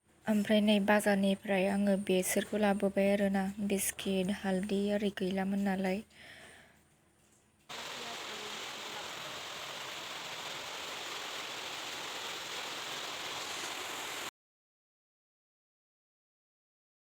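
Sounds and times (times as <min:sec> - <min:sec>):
rushing water hiss: 0:07.7 - 0:14.3.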